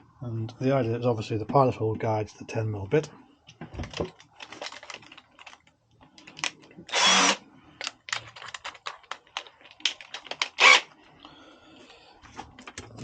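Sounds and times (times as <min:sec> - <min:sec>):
clicks and knocks of handling: 0:03.0 - 0:06.8, 0:07.8 - 0:10.5, 0:12.3 - 0:13.0
electric drill running: 0:06.9 - 0:07.4, 0:10.6 - 0:10.9.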